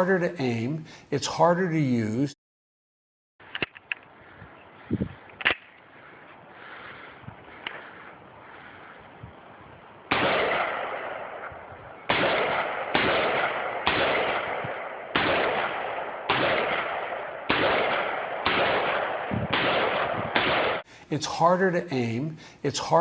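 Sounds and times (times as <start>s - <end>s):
gunshots with echo: 10.1s - 20.9s.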